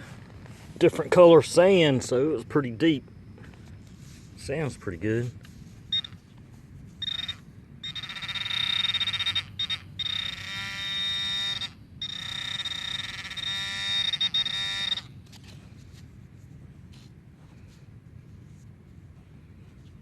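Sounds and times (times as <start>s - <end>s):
metal detector buzzy tone: 5.9s - 6.2s, 7.0s - 15.2s.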